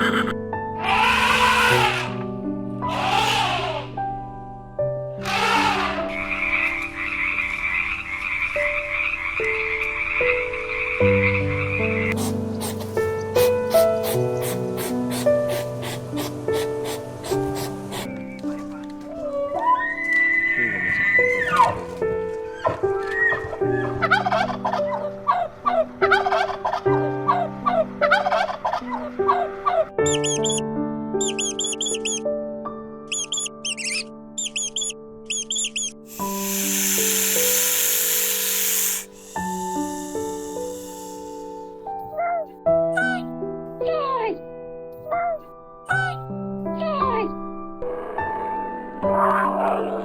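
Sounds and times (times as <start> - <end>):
frogs calling: 0.0 - 2.2, 2.8 - 4.0, 5.2 - 18.4, 30.0 - 30.6, 31.2 - 32.2, 33.1 - 41.6
soft piano music: 0.0 - 50.0
high quick squeaks: 30.0 - 30.6, 31.2 - 32.2, 33.1 - 41.4.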